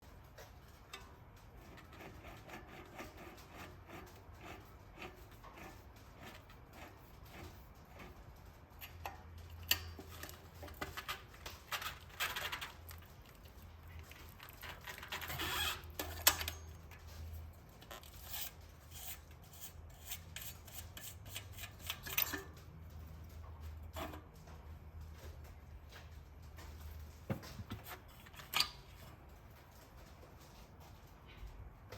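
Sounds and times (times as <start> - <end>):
small parts and tools handled: 26.6 - 30.5.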